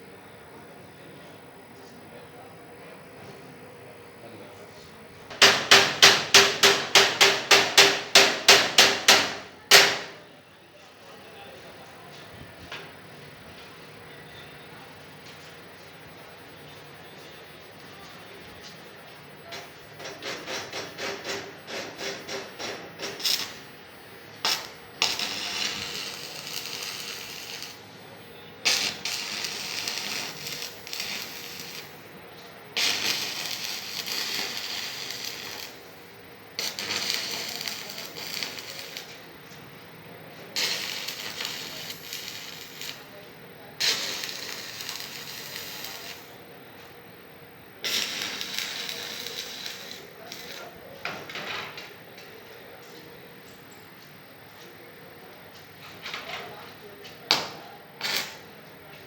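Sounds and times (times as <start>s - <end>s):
arc welding crackling hiss: 5.3s - 10.2s, 20.4s - 28.0s, 28.6s - 39.2s, 40.5s - 43.2s, 43.8s - 46.4s, 47.7s - 51.0s, 57.9s - 59.0s.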